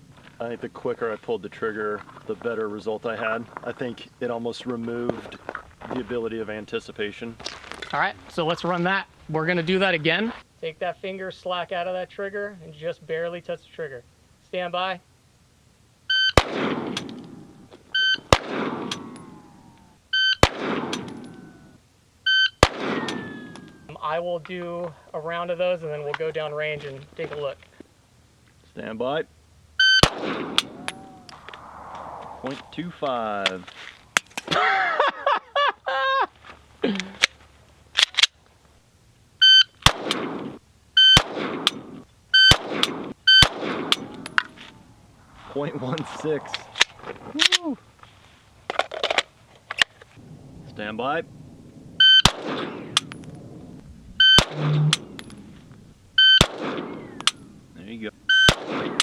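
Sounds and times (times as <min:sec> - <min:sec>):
pistol shot echoing: 0:16.4 - 0:17.5, 0:18.2 - 0:19.5, 0:20.4 - 0:21.5, 0:22.6 - 0:23.8, 0:30.0 - 0:31.8, 0:39.8 - 0:40.6, 0:41.2 - 0:44.4, 0:52.1 - 0:53.2, 0:54.4 - 0:55.1, 0:56.3 - 0:57.4, 0:58.4 - 0:59.0
trigger clicks: 0:18.2 - 0:21.5, 0:22.6 - 0:23.8, 0:54.2 - 0:55.4, 0:56.2 - 0:57.5
shot timer beeps: 0:54.2 - 0:54.9, 0:56.2 - 0:56.4
electronic shot timer beep: 0:56.2 - 0:56.5.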